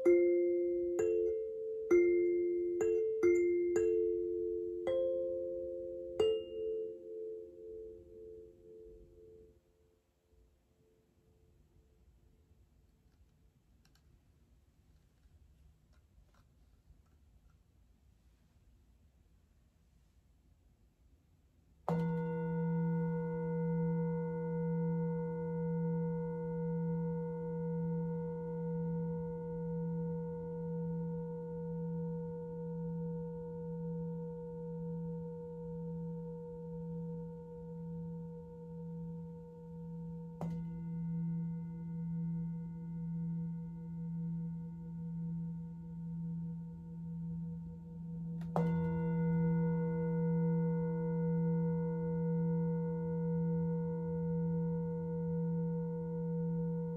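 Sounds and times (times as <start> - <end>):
singing bowl ringing: 0.0 - 9.8, 21.9 - 56.9.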